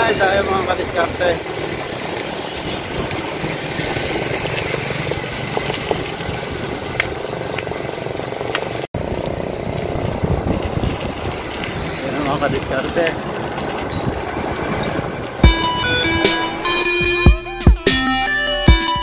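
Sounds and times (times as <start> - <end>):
bicycle tyres on road: 0.0 - 17.2
wind noise on microphone: 1.6 - 7.9, 9.0 - 17.3.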